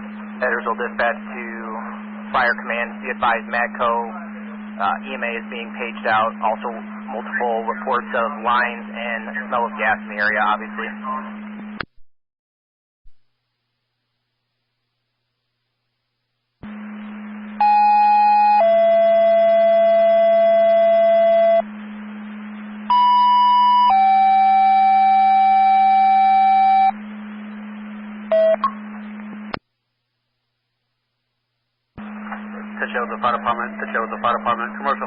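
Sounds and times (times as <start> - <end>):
radio channel hum and hiss: 0.0 - 11.9, 16.6 - 17.7, 18.6 - 29.7, 32.0 - 35.0.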